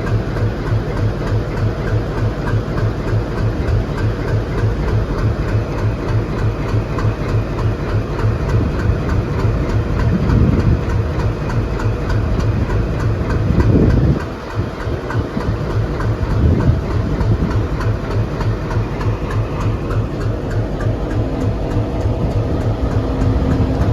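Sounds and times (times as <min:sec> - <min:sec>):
locomotive engine idling: 0:00.0 - 0:23.9.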